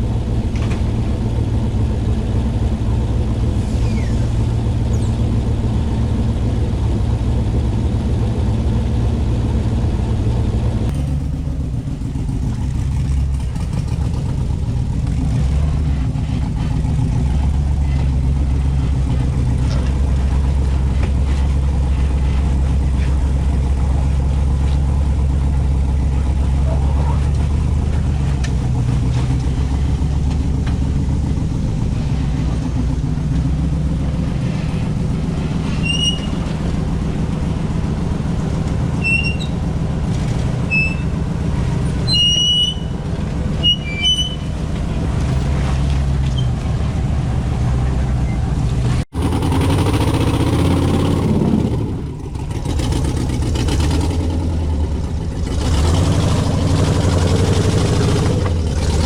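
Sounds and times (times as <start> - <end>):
car engine running at low revs: 0.0 - 59.0.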